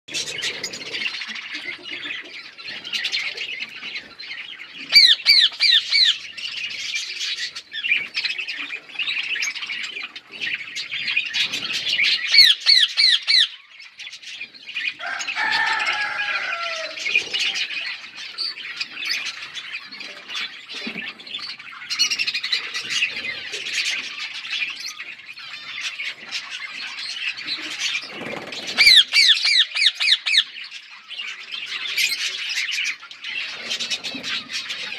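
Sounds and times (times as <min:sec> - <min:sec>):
parrots chattering and chirping: 0:00.1 - 0:34.9
shrill parrot calls: 0:04.9 - 0:06.2, 0:12.3 - 0:13.5, 0:28.8 - 0:30.5.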